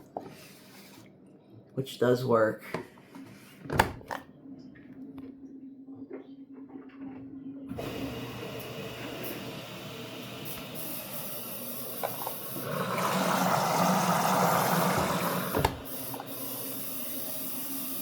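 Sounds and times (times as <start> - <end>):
hiss of water entering drum: 7.8 - 18.0.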